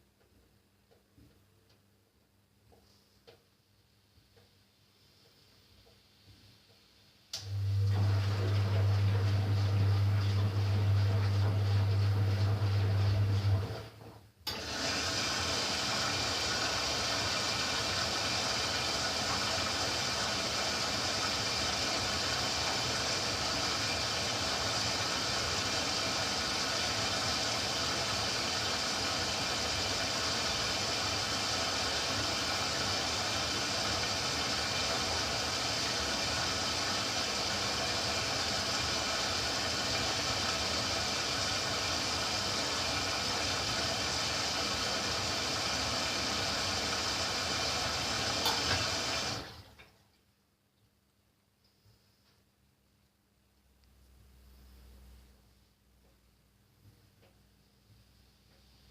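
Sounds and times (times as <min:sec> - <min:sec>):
washing machine taking in water: 0:07.6 - 0:13.9, 0:14.5 - 0:50.0.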